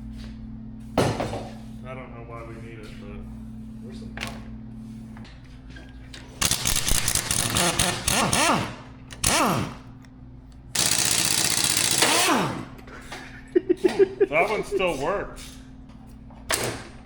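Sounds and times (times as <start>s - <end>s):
impact wrench whining: 6.4s - 10.1s, 10.7s - 12.9s.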